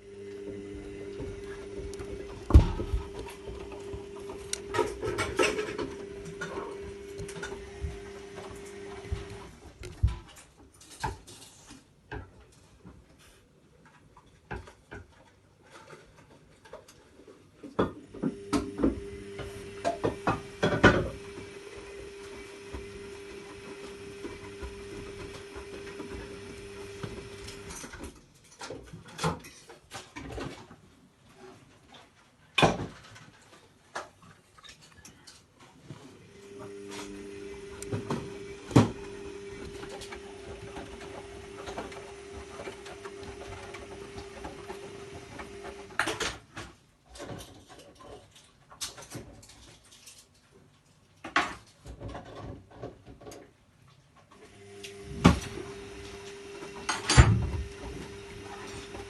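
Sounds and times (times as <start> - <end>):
washing machine motor humming: 0.0 - 10.1, 18.1 - 28.1, 36.2 - 46.2, 54.4 - 59.0.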